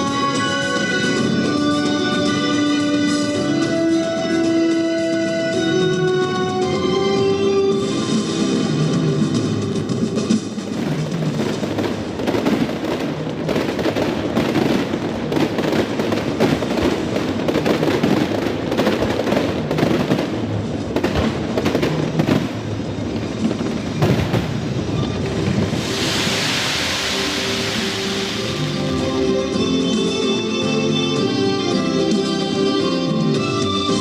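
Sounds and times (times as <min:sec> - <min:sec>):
music playing: 0:00.0 - 0:12.5, 0:24.0 - 0:34.0
fireworks bangs and crackles: 0:07.7 - 0:30.6.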